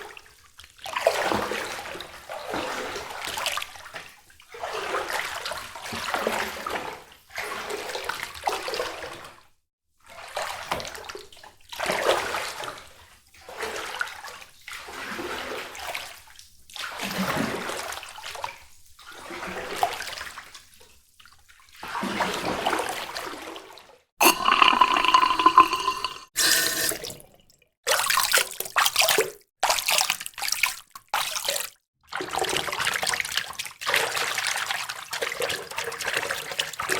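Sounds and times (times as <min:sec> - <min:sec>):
water splashing and running: 0:24.2 - 0:27.1.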